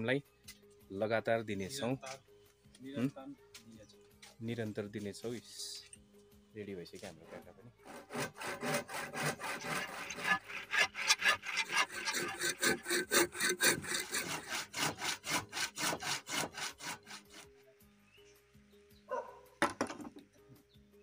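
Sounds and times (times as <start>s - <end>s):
hand saw cutting wood: 7.2s - 17.5s.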